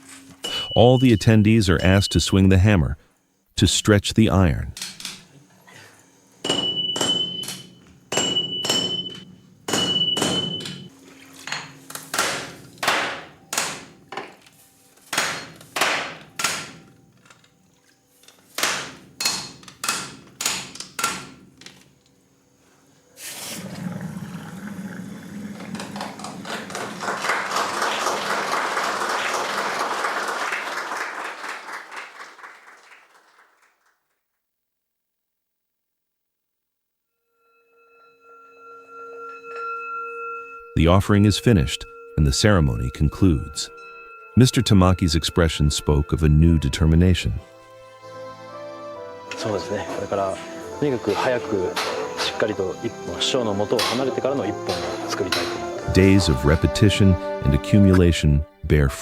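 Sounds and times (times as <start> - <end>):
hammers striking steel on an anvil: 6.4 - 10.9, 12.1 - 14.0, 15.1 - 16.8, 18.6 - 21.2, 51.7 - 52.5.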